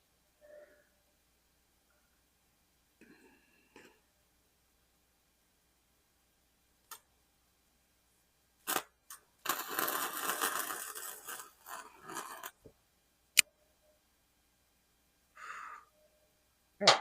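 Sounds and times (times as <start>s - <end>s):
welder arc crackling: 8.6s - 12.7s.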